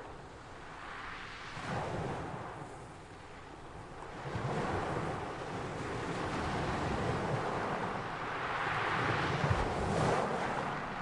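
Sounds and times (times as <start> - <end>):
ocean waves breaking: 4.1 - 11.0.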